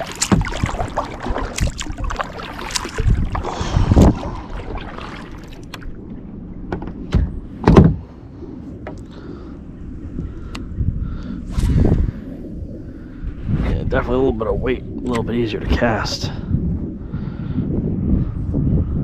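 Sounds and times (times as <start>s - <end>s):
gear knocking and rustling in kayak: 0.0s - 6.0s, 6.6s - 8.1s
heavy thumps against hull: 6.7s - 8.1s.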